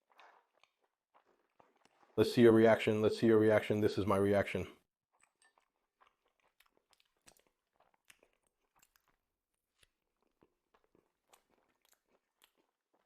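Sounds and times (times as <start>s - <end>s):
faint chewing of food: 0.0s - 2.2s, 5.1s - 13.0s.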